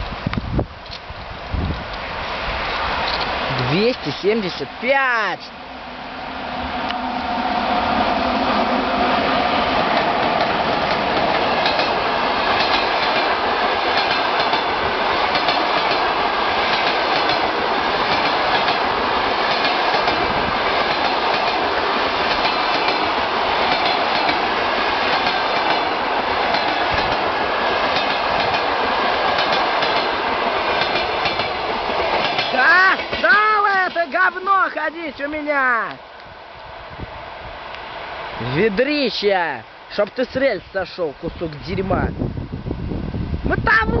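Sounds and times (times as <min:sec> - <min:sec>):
passenger train rushing past: 0:00.0 - 0:44.0
train wheels clattering on rails: 0:09.2 - 0:34.0.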